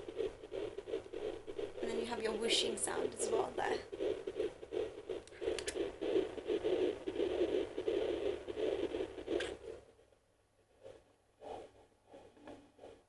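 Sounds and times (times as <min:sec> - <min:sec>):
rhythmic whooshing: 0:00.0 - 0:09.8
probe scratching on gel: 0:00.0 - 0:09.9
fast galloping heartbeat: 0:00.0 - 0:10.0.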